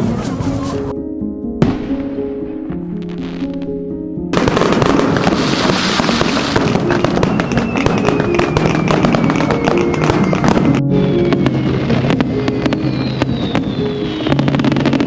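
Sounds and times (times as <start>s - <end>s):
fireworks crackling: 0.0s - 0.9s, 4.4s - 15.0s
background music: 0.0s - 15.0s
faint falling whistle: 6.9s - 10.5s.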